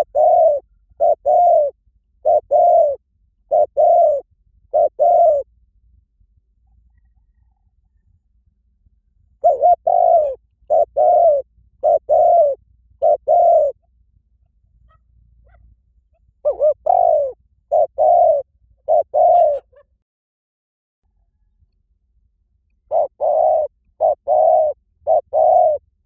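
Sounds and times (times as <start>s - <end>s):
dove cooing: 0.0s - 5.5s, 9.4s - 13.9s, 16.4s - 19.9s, 22.9s - 26.0s.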